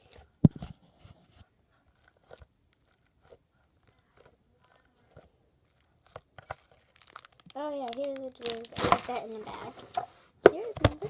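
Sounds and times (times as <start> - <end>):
slime crackling and popping: 5.6 - 9.4.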